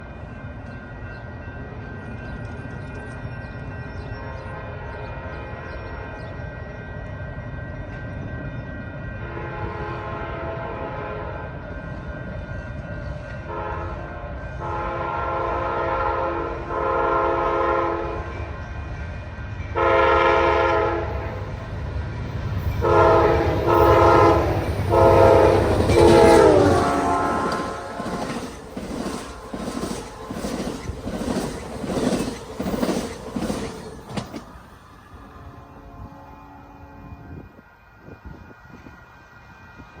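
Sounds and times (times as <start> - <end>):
locomotive air horn blasts: 13.5 - 18.2, 19.8 - 21.2, 22.8 - 28.4
wheels clicking over rail joints: 24.6 - 34.7.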